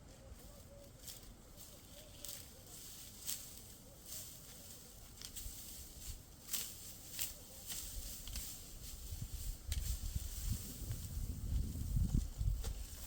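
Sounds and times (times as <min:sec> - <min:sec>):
soft low rustle: 0:00.0 - 0:13.0.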